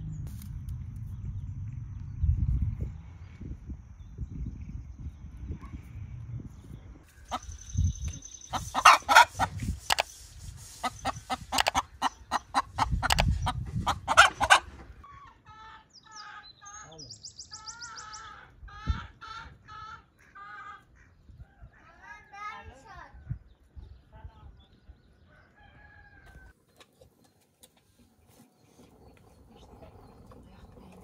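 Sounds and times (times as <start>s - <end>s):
chickens clucking: 7.2s - 7.9s, 8.5s - 16.5s, 26.6s - 31.0s.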